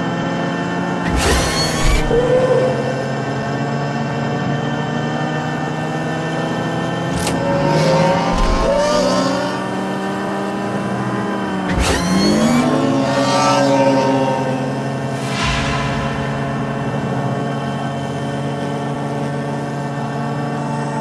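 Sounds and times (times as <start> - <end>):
buzzing engine hum: 0.0 - 15.8.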